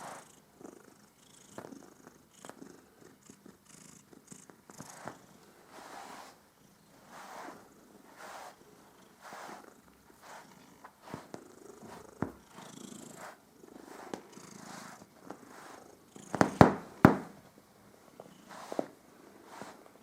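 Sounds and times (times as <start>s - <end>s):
cat purring: 0.0s - 20.0s
knocks: 16.4s - 17.4s.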